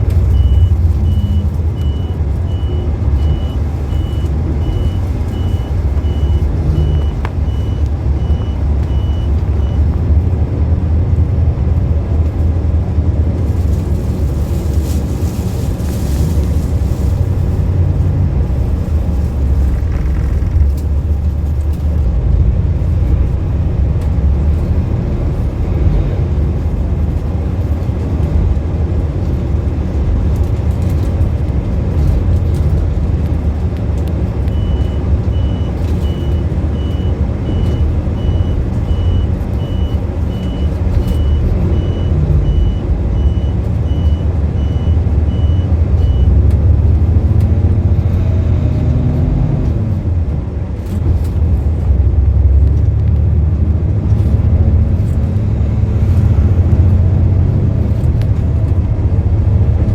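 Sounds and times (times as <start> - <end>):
bus engine and road rumble: 0.0 - 59.9
high electronic beeping: 0.3 - 9.8.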